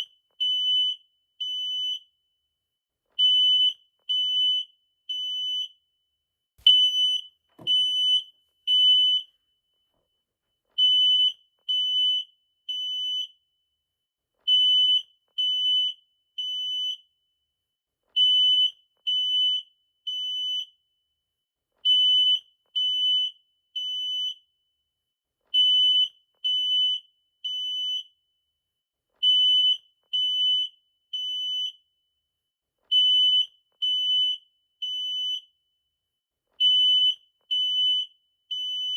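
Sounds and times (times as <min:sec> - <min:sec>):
smoke detector alarm beeping: 0:00.0 - 0:02.2, 0:03.2 - 0:05.9, 0:06.6 - 0:09.4, 0:32.9 - 0:35.5, 0:36.6 - 0:38.9.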